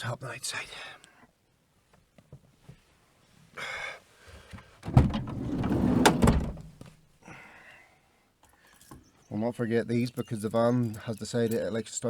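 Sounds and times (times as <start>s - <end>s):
van door latch click: 4.8s - 6.8s
van door rumbling open: 4.8s - 6.9s.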